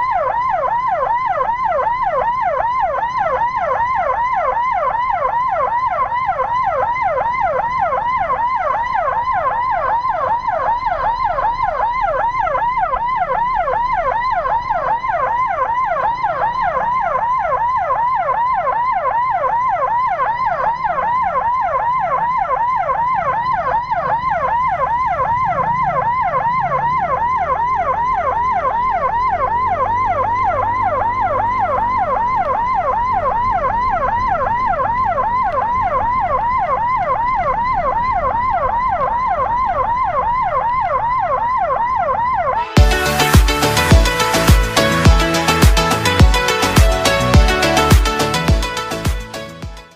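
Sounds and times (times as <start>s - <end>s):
electronic siren yelping: 0.0s - 49.9s.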